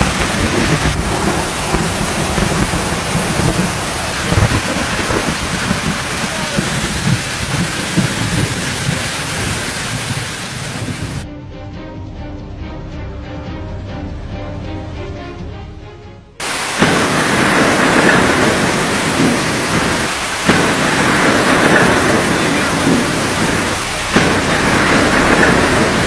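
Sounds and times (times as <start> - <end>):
hailstones pelting down: 0.0 - 11.2, 16.4 - 26.0
music: 11.2 - 16.4.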